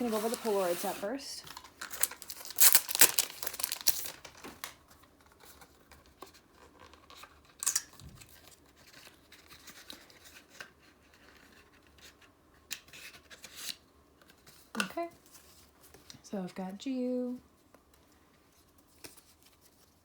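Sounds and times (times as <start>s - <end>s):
packaging crinkling and tearing: 1.4s - 12.1s.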